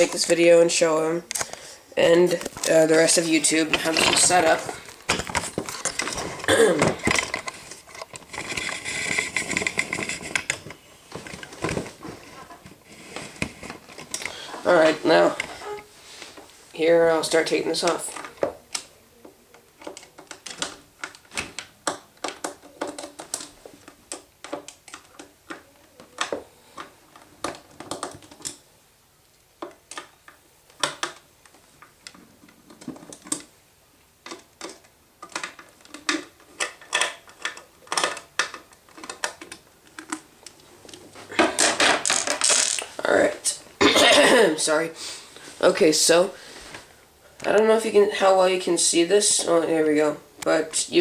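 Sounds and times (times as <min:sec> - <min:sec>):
hands handling parts: 0:01.3 - 0:16.6, 0:17.8 - 0:28.6, 0:29.6 - 0:43.4.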